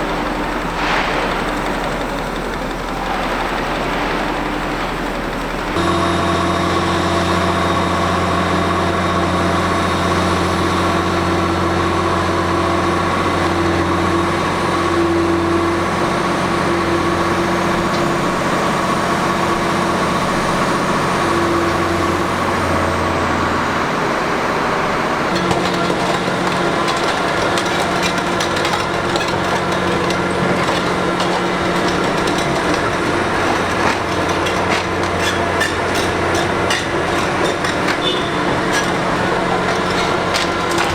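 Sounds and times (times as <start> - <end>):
excavator engine and hydraulics humming: 0.0 - 40.9
rapid crackling clatter: 25.3 - 40.9.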